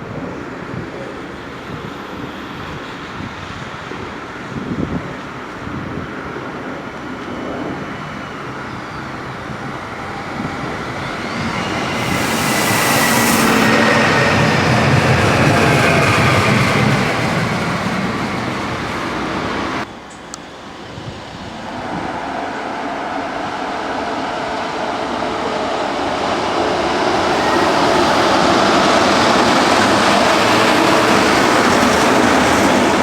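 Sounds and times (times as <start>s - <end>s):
train passing with low rumble: 0.0s - 33.0s
high falling whine: 11.2s - 15.0s, 27.1s - 30.7s.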